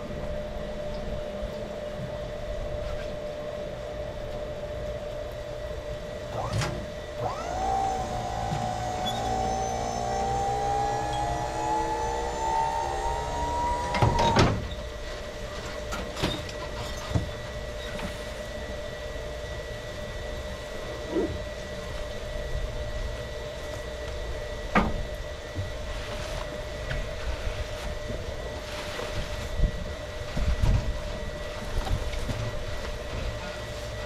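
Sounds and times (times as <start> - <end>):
steady hum: 0.0 - 34.0
electric motor whining: 6.3 - 14.7.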